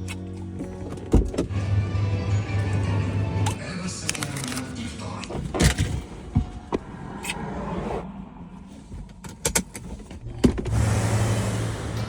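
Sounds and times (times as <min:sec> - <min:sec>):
low rumble: 0:06.0 - 0:09.4.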